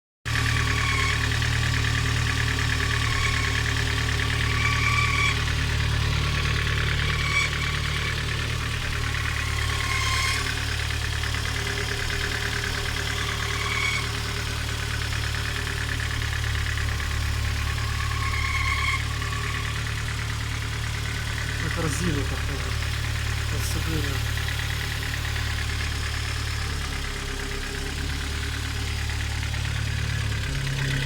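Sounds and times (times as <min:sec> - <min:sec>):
car engine idling: 0:00.3 - 0:31.0
gearbox chirping squeak: 0:04.4 - 0:05.4, 0:09.3 - 0:10.6.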